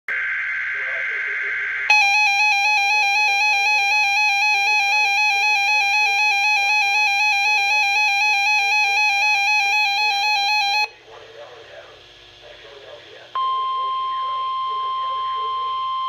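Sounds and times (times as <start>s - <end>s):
two-pitch electronic alert tone: 0.1s - 10.9s.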